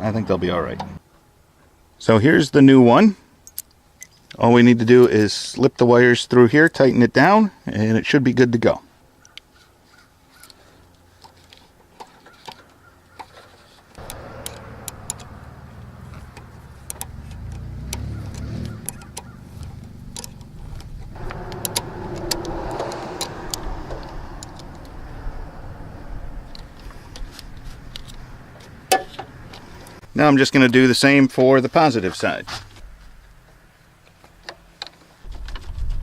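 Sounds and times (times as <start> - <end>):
steady low rumble: 14.0 - 30.2
metal tool clicks and clinks: 14.4 - 15.3.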